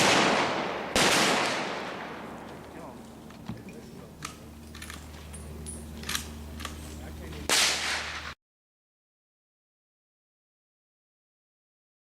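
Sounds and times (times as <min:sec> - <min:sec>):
shotgun blast: 0:00.0 - 0:02.4, 0:07.5 - 0:08.4.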